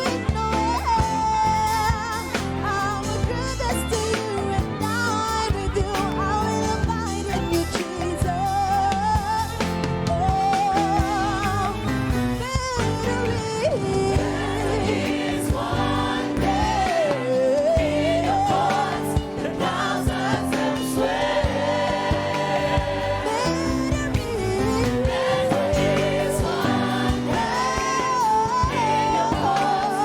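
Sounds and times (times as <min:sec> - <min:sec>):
band with drums and keyboard: 0:00.0 - 0:30.0
lead singer with vibrato: 0:00.0 - 0:30.0
backing choir singing: 0:13.7 - 0:30.0.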